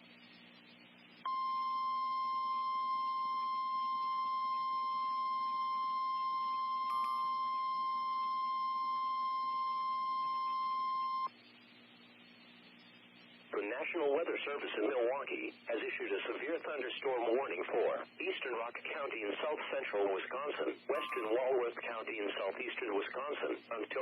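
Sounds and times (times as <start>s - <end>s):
high steady alarm tone: 1.3s - 11.3s, 20.9s - 21.6s.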